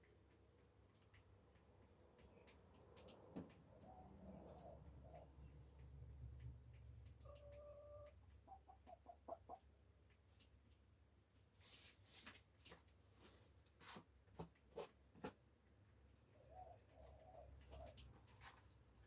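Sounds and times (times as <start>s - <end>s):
hens clucking: 0.5s - 10.6s, 16.2s - 18.7s.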